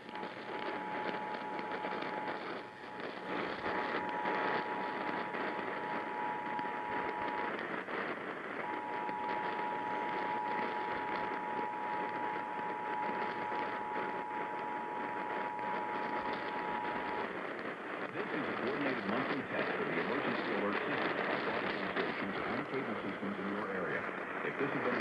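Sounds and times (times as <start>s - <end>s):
radio hiss: 0.0s - 25.0s
two-tone alarm: 0.1s - 7.7s, 8.6s - 17.4s.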